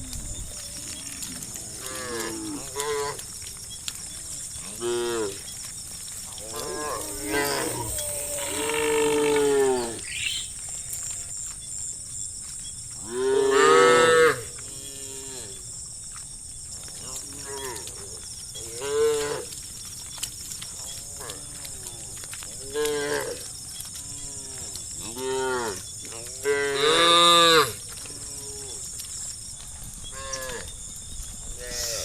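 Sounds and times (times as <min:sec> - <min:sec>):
cattle mooing: 0:06.5 - 0:10.0.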